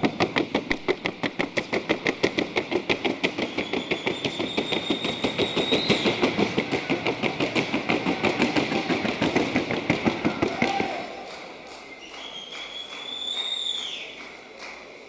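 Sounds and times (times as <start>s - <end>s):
hooves striking wooden board: 0.0s - 11.0s.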